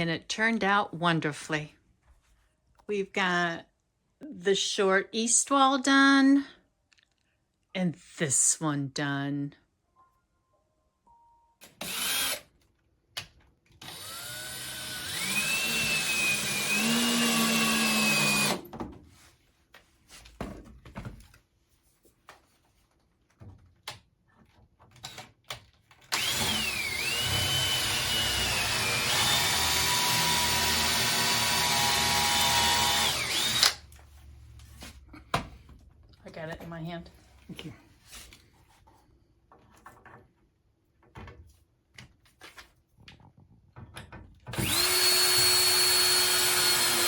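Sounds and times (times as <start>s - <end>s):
power drill drilling into wood: 11.7s - 12.5s, 13.8s - 18.6s, 26.1s - 33.8s, 44.5s - 47.0s.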